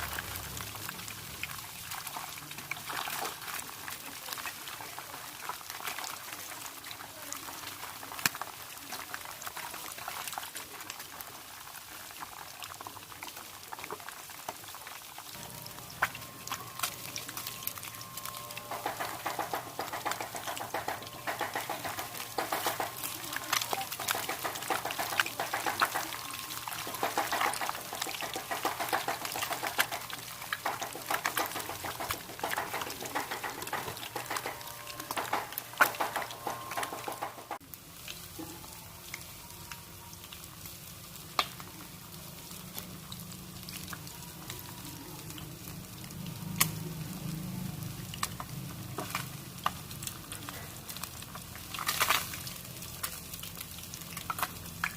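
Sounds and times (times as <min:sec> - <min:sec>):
fish frying in hot oil: 0:00.0 - 0:54.9
low hum: 0:15.4 - 0:23.2.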